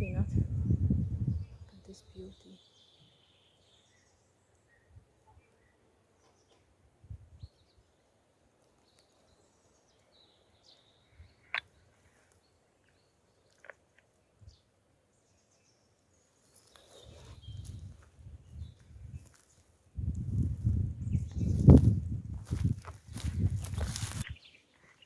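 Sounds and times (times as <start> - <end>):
faint bird chirps: 0.0 - 6.7, 8.8 - 13.7, 14.3 - 19.7
soft low thumps: 20.0 - 24.2.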